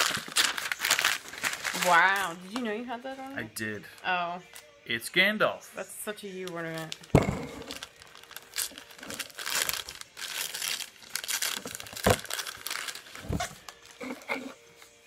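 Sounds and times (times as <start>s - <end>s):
wrapping paper crinkling and tearing: 0.0s - 2.7s, 6.5s - 14.4s.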